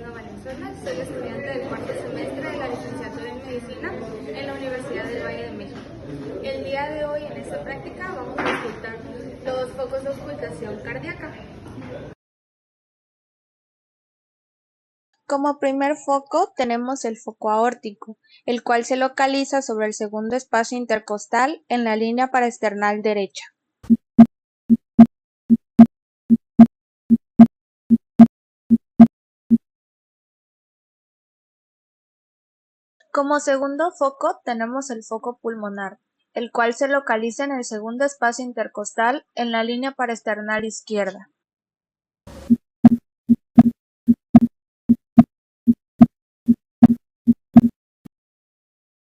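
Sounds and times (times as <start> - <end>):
heartbeat lub-dub thuds: 23.8 - 29.6, 42.3 - 47.8
heartbeat lub-dub: 42.3 - 47.7.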